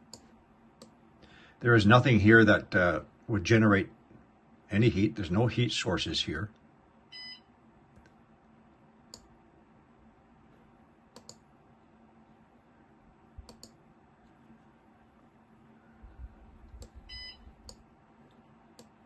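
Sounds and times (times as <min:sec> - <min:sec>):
faint sharp clicks: 0:11.2 - 0:11.4, 0:13.4 - 0:13.8.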